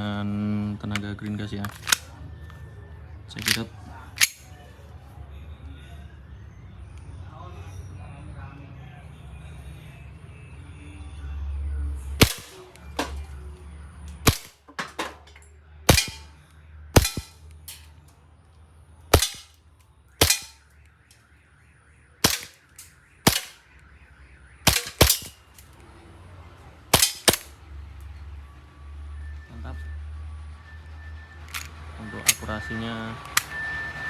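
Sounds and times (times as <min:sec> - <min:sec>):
airsoft pistol shots: 0:12.2 - 0:13.2, 0:14.3 - 0:15.2, 0:15.9 - 0:16.3, 0:17.0 - 0:17.8, 0:19.2 - 0:19.5, 0:20.2 - 0:20.6, 0:22.2 - 0:22.6, 0:23.3 - 0:23.6, 0:24.7 - 0:25.5, 0:27.0 - 0:27.5.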